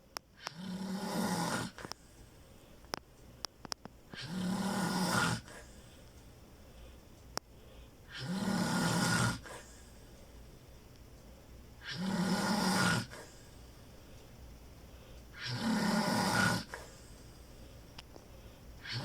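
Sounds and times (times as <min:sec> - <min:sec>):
person snoring: 0:00.4 - 0:01.9, 0:04.2 - 0:05.7, 0:08.1 - 0:09.8, 0:11.8 - 0:13.3, 0:15.4 - 0:17.0
faint click: 0:17.9 - 0:18.3.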